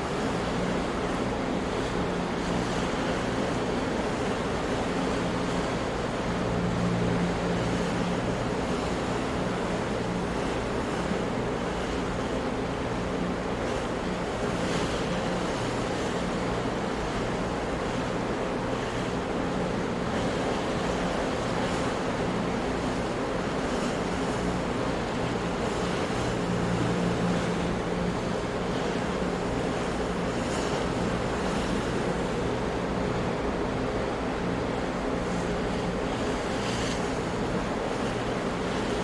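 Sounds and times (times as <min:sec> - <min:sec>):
ocean waves breaking: 0:00.0 - 0:39.0.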